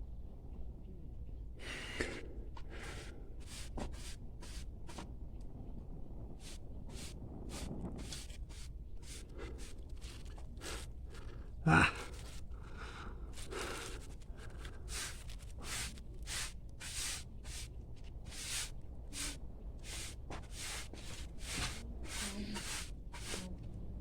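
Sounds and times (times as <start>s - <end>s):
person blowing short puffs: 13.4s - 17.7s, 18.3s - 23.4s.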